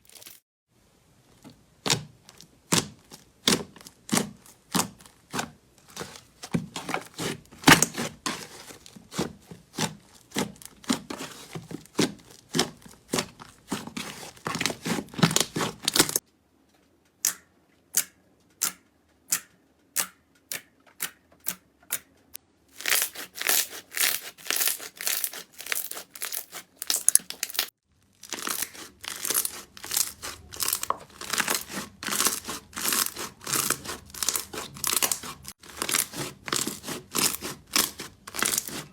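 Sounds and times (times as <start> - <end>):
slime crackling and popping: 9.7 - 16.2, 22.8 - 38.9.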